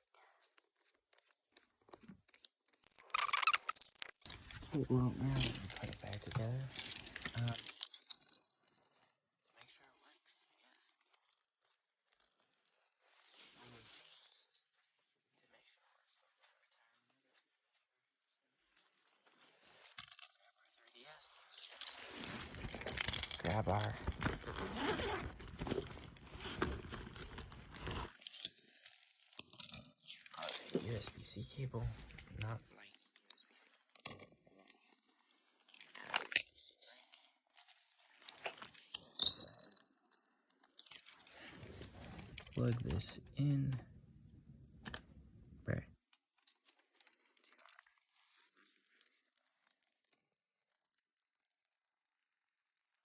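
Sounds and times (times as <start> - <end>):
rustling handling noise: 4.2 - 9.3, 11.0 - 15.1, 16.1 - 43.2, 46.4 - 52.3.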